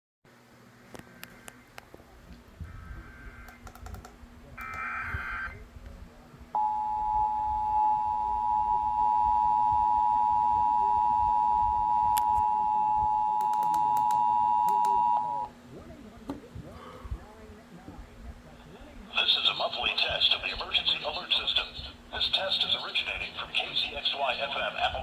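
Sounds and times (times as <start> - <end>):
two-tone attention signal: 6.6 - 15.5.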